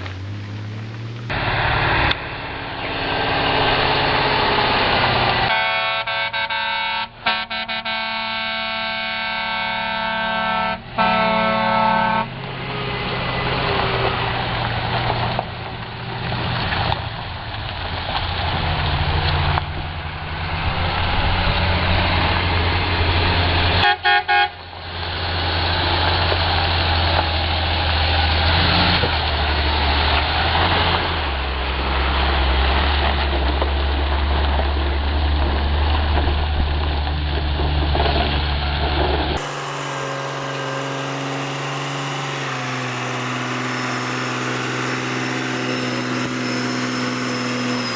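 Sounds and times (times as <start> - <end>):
heavy truck engine running: 0.0 - 47.9
road noise: 0.0 - 47.9
horn toots: 5.4 - 12.4, 23.8 - 24.7, 39.4 - 47.9.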